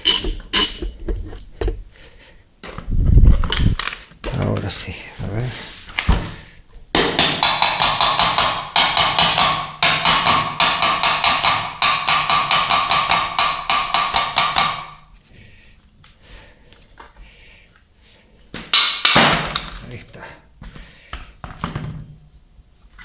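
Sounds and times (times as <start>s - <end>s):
rapid hammer blows on metal: 7.0s - 15.0s.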